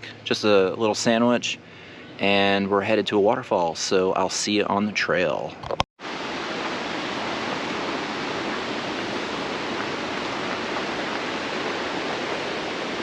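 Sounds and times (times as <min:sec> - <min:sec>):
waterfall roaring: 0:06.0 - 0:13.0.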